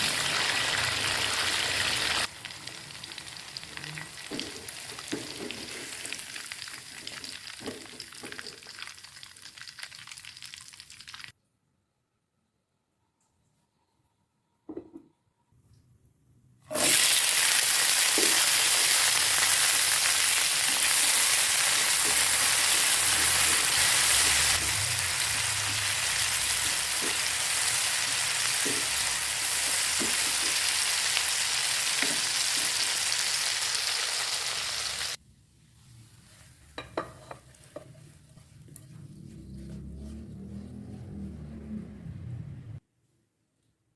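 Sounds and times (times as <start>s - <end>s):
food sizzling in hot oil: 0.0s - 11.3s, 16.7s - 35.2s.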